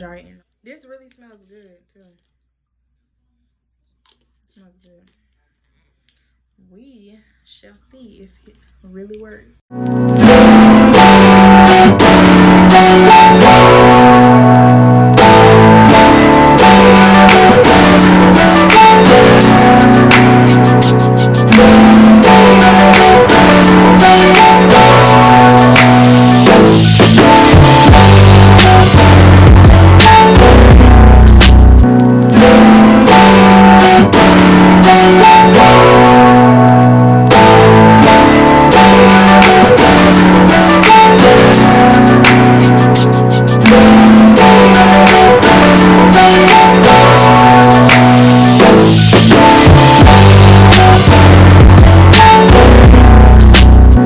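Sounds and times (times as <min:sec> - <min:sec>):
loud background music: 0:09.8 - 0:54.0
crisp ticking beat: 0:15.1 - 0:31.9, 0:38.7 - 0:54.0.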